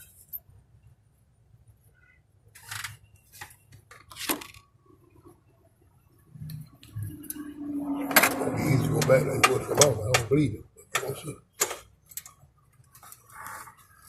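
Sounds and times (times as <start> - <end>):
metallic clicks and clinks: 11.0 - 12.4.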